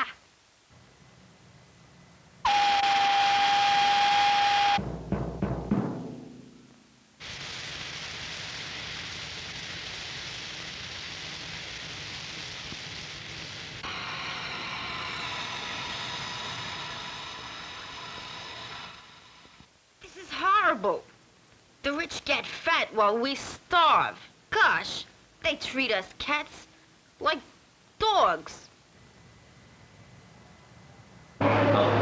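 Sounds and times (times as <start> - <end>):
long even hiss: 0.0 - 20.7.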